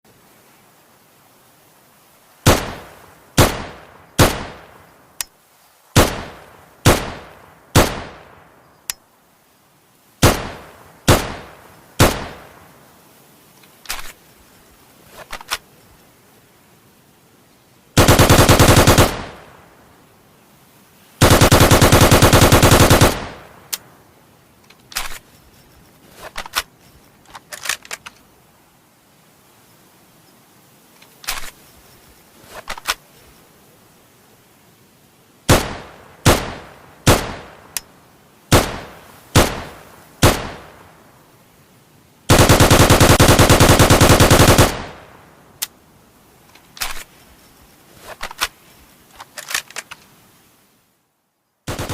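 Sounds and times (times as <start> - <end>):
submachine gun firing bursts: 2.5 - 4.6, 6.0 - 7.2, 7.8 - 8.2, 10.2 - 12.4, 18.0 - 19.4, 21.2 - 23.4, 35.5 - 37.5, 38.5 - 40.7, 42.3 - 45.0, 51.7 - 51.9
faint single clicks or shots: 27.3 - 28.2, 35.5 - 37.9.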